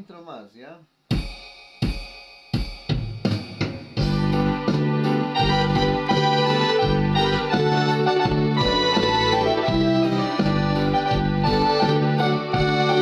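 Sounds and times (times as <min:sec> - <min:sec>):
keyboard march-style accompaniment: 0:04.0 - 0:13.0.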